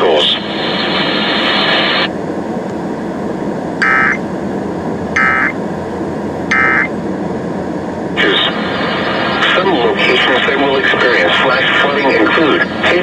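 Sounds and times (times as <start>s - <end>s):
radio static: 0.0s - 2.1s, 3.8s - 4.2s, 5.1s - 7.0s, 8.2s - 13.0s
short data bursts: 3.8s - 4.2s, 5.2s - 5.6s, 6.5s - 6.9s.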